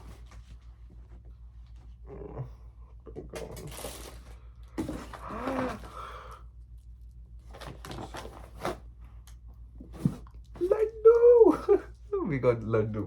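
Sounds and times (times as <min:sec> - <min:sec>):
packaging rustling and crinkling: 0:03.6 - 0:06.1, 0:07.4 - 0:08.8.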